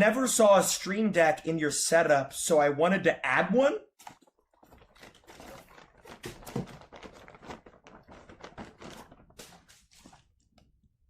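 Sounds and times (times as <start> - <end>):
packaging rustling and clicking: 4.0 - 10.7.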